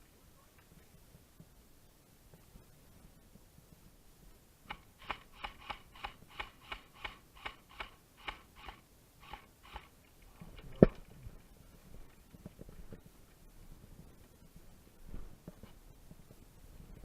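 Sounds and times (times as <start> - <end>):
airsoft gun shots: 4.7 - 9.9.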